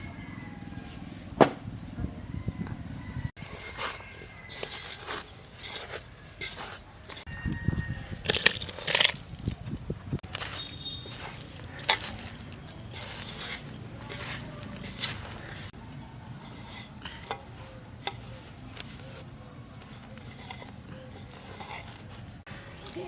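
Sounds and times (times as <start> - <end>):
utensils clinking against cookware: 3.4 - 7.3, 10.2 - 15.8.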